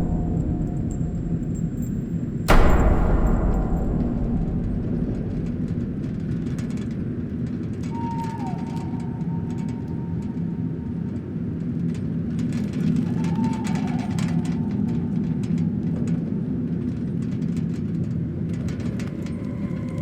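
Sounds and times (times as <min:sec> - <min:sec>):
faint falling whine: 0:00.0 - 0:07.8
low rumble: 0:00.0 - 0:07.8.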